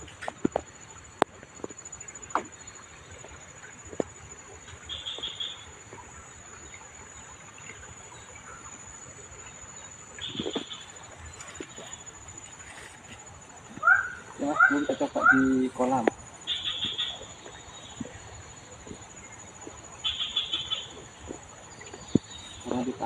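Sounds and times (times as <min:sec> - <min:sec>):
short bird calls: 0:16.5 - 0:17.2.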